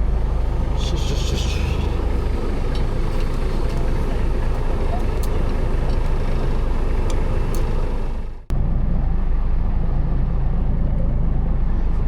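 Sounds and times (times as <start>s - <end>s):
water noise: 0.0s - 8.4s
boat engine running: 0.0s - 8.5s
wind: 0.0s - 12.0s.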